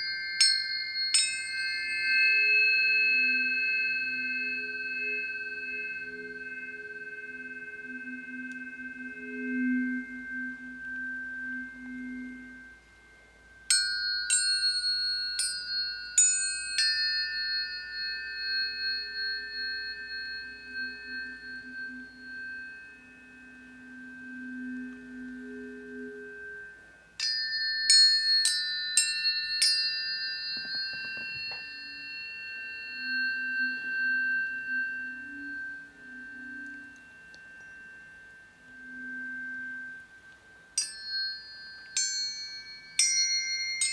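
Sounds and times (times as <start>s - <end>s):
tuning fork ringing tone: 0.0s - 43.9s
soft low tone: 1.8s - 13.7s, 18.1s - 27.2s, 30.6s - 40.8s
tuning fork strike click: 7.7s - 12.7s.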